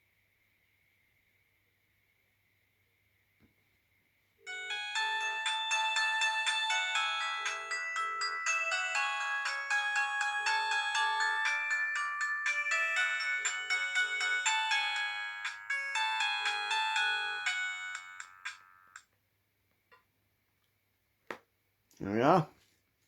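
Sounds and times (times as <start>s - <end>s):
chiming ringtone melody: 4.5s - 19.0s.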